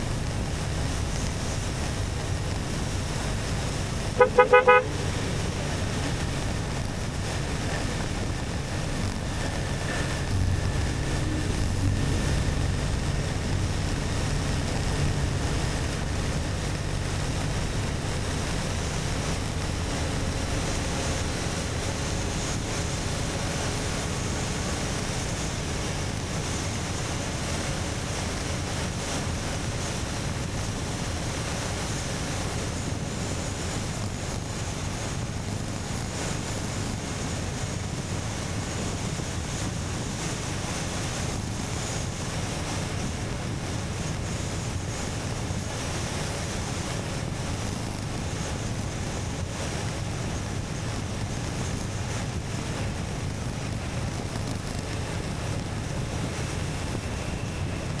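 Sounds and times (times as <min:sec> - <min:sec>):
motorcycle engine hum: 0:00.0 - 0:58.0
wind rush on microphone: 0:00.0 - 0:58.0.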